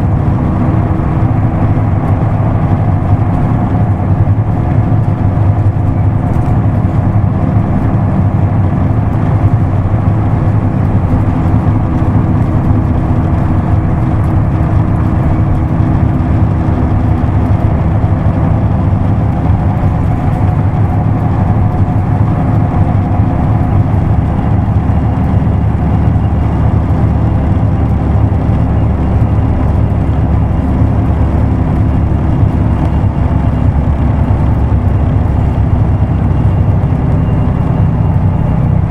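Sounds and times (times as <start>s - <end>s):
bus diesel engine running: 0.0s - 38.9s.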